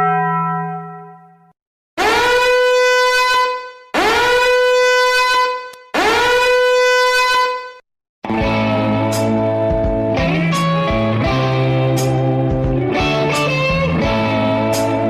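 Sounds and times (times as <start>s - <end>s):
horn blasts: 2.0s - 7.8s.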